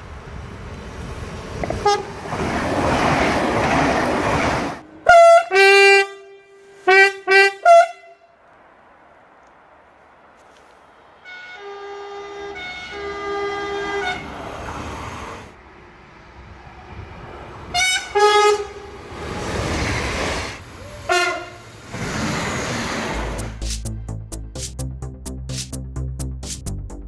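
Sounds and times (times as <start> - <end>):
train running past: 0.0 - 6.9, 10.9 - 23.7
train horn blasts: 1.8 - 2.2, 4.9 - 8.4, 11.2 - 14.3, 17.7 - 18.9, 21.0 - 22.0.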